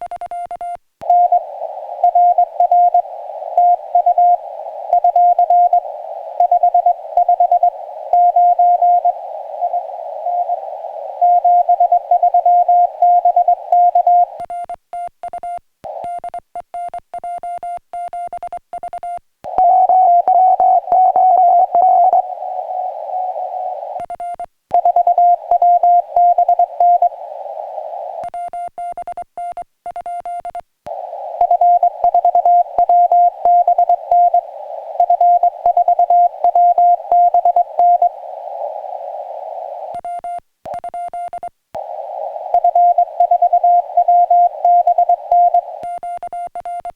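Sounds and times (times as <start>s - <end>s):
radio band hiss: 1.4s - 12.1s, 19.5s - 24.0s, 25.3s - 28.2s, 30.9s - 40.0s, 41.8s - 45.8s
morse code tone: 15.3s - 22.4s.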